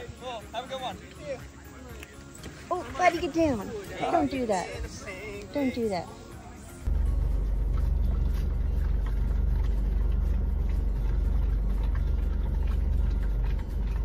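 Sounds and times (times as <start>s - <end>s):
steady low rumble: 6.8s - 14.0s.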